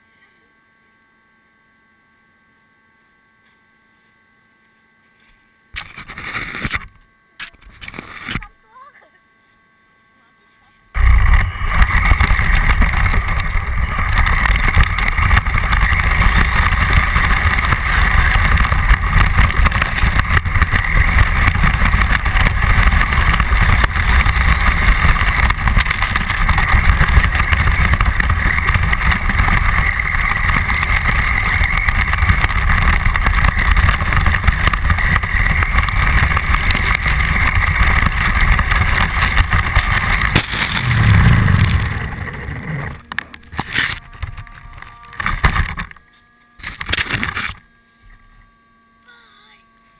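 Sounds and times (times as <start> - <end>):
low rumble over microphone: 11.0 - 46.0
small engine at high revs: 11.0 - 48.4.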